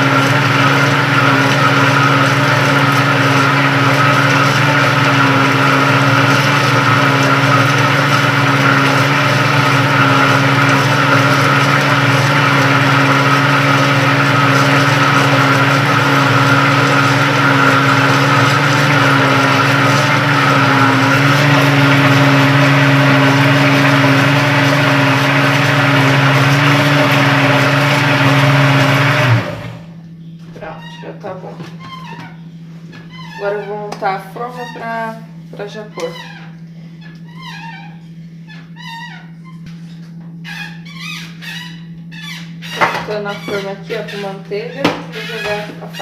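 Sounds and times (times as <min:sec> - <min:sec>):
kitchen blender motor running: 0:00.0 - 0:30.0, 0:40.8 - 0:46.0.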